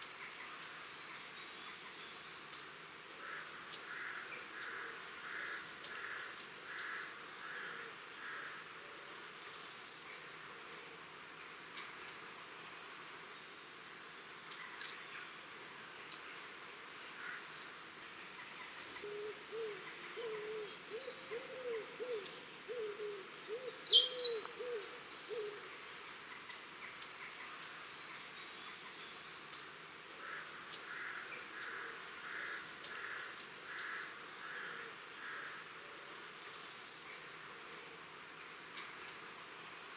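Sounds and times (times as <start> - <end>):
lower warbling bird call: 19.0 - 25.6
tits high thin contact calls: 23.6 - 24.9.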